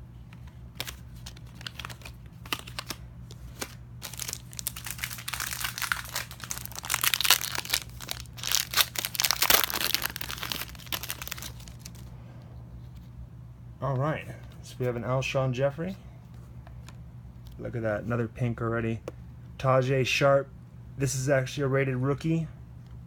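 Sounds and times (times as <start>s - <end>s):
foil wrapper crinkling: 0.8s - 12.1s.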